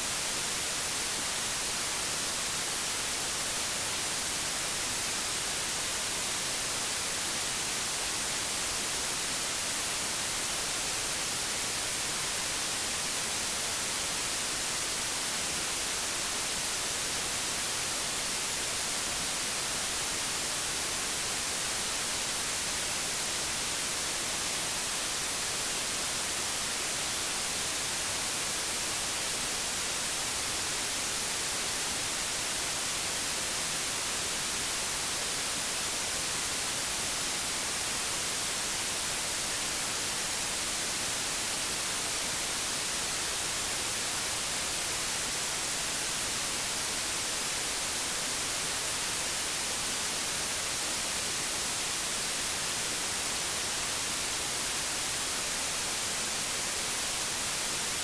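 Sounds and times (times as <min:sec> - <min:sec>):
television static hiss: 0:00.0 - 0:58.0.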